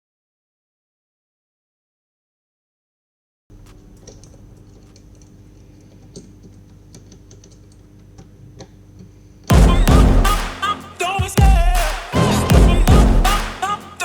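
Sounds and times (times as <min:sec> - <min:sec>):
electrical hum: 0:03.5 - 0:14.0
loud music: 0:09.5 - 0:14.0.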